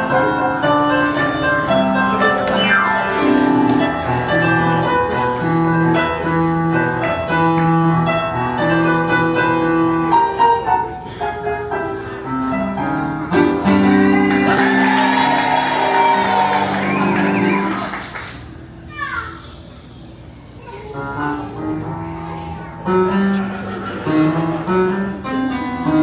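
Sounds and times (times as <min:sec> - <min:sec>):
keyboard-led instrumental music: 0:00.0 - 0:08.0.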